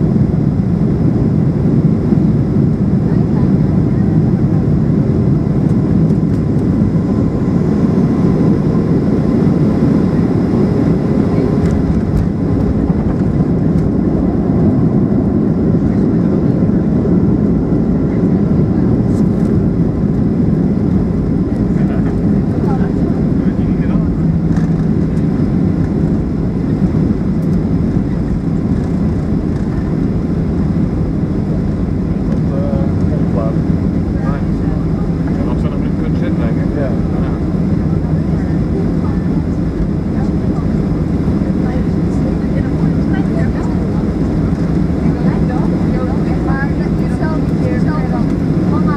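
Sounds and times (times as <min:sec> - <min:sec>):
airplane cabin roar: 0:00.0 - 0:48.9
constant hum: 0:00.0 - 0:48.9.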